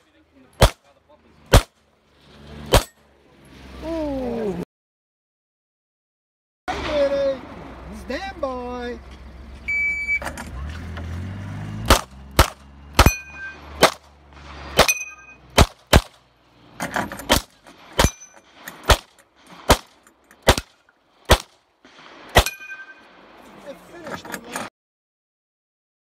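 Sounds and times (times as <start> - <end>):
pistol shots: 0.6 - 0.9, 1.5 - 1.8, 2.7 - 2.9, 11.9 - 16.2, 18.8 - 22.8
shot timer beep: 9.7 - 10.2
ring of steel targets: 12.0 - 14.0, 14.7 - 16.1, 17.0 - 20.8, 22.3 - 23.2.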